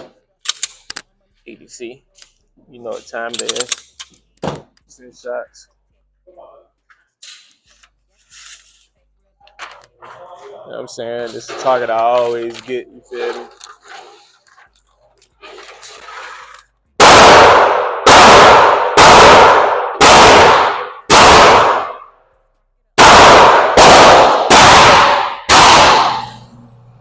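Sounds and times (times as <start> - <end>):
gunshots echoing indoors: 17.0 - 22.2, 23.0 - 26.5.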